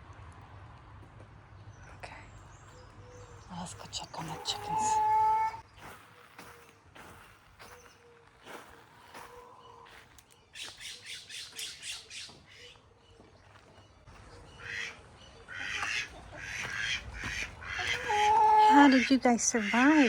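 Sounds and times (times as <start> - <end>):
chickens squawking: 4.1 - 5.6, 9.0 - 12.8, 14.3 - 20.0.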